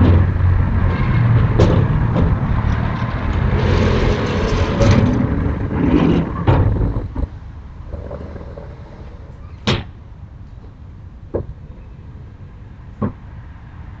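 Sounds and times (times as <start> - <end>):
steady low rumble: 0.0 - 9.4.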